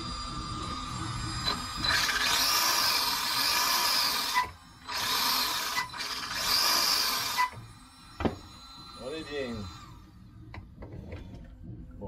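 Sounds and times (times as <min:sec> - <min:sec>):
small electric motor whirring: 0:00.0 - 0:10.5.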